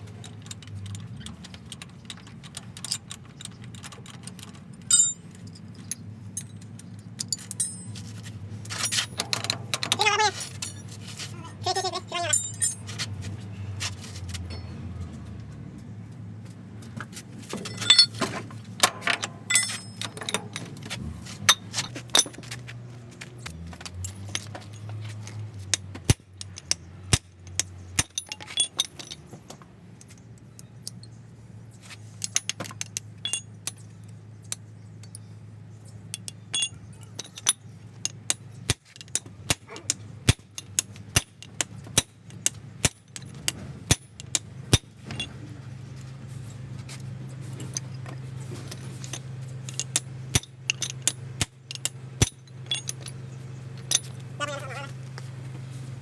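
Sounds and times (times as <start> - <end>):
metal tools clinking: 0.0 - 13.8, 17.5 - 22.7, 23.4 - 31.2, 32.0 - 34.0, 36.1 - 45.7, 46.4 - 55.3.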